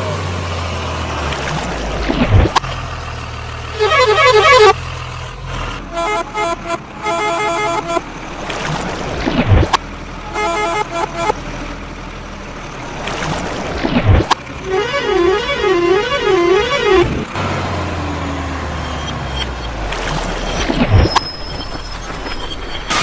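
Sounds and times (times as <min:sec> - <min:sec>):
low engine rumble: 0:00.1 - 0:18.7
cartoon horn toots: 0:03.8 - 0:04.8, 0:05.9 - 0:08.0, 0:10.3 - 0:11.5, 0:14.6 - 0:17.3.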